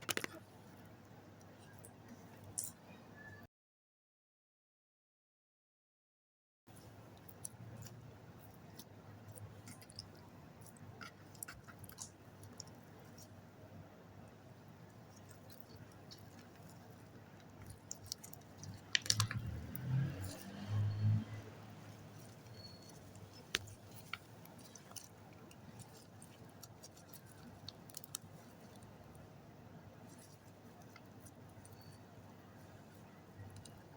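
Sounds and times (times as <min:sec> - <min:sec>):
sticky slime clicks and crackles: 0:00.0 - 0:00.4, 0:15.1 - 0:20.9, 0:21.9 - 0:29.1.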